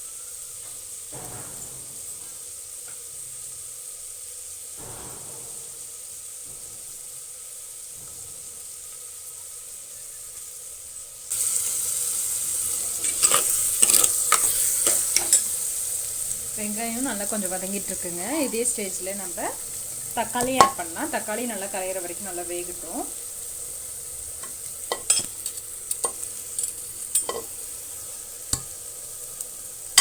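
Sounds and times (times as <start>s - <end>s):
onions sizzling in oil: 0.0s - 30.0s
spoon scraping and knocking pan: 11.4s - 30.0s.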